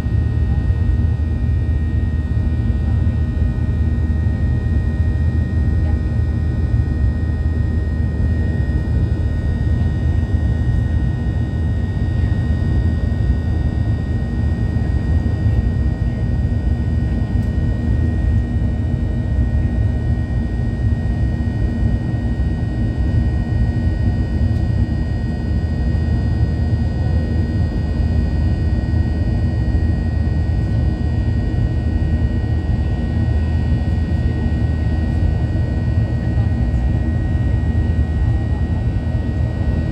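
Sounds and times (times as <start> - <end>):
jet engines rumbling in cabin: 0.0 - 39.9.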